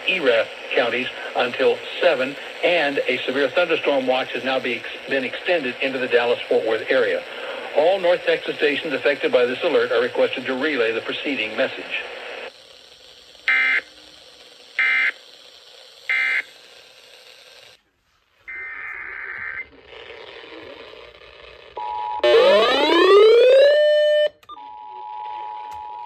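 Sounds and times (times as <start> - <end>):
warbling digital data bursts: 22.2 - 24.0
rising electronic sweep: 22.2 - 24.3.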